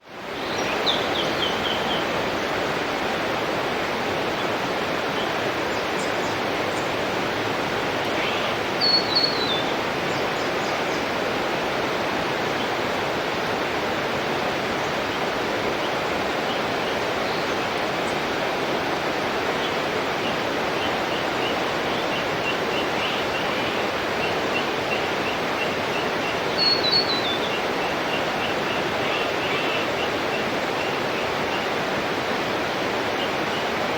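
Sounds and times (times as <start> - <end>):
waterfall rushing: 0.2 - 33.9
birds chirping: 20.8 - 31.7.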